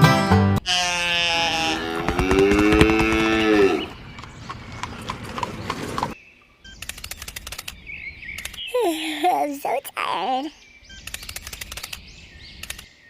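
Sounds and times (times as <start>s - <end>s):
cow mooing: 0.6s - 6.2s
quiet clicks: 12.6s - 12.9s.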